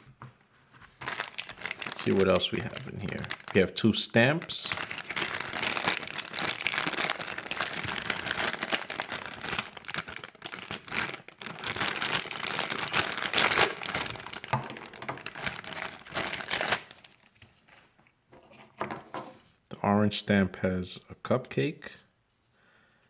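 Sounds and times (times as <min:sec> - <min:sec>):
plastic packaging crinkling: 0:00.8 - 0:17.9.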